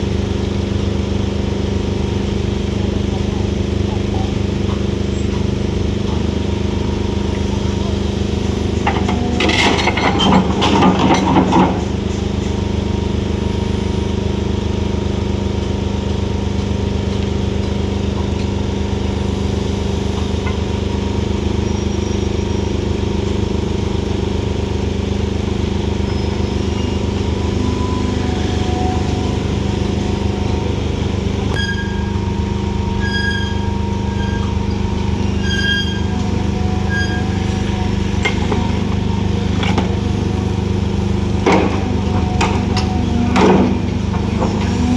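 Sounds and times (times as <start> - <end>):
diesel machinery running: 0.0 - 44.9.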